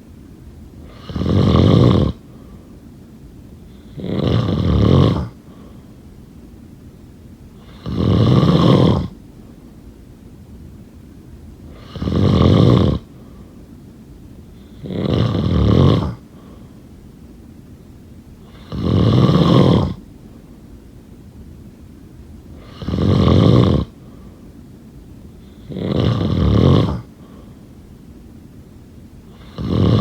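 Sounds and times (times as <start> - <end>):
rough snoring: 0.8 - 2.2, 3.8 - 5.4, 7.6 - 9.2, 11.7 - 13.1, 14.6 - 16.2, 18.4 - 20.0, 22.6 - 24.0, 25.4 - 27.1, 29.3 - 30.0.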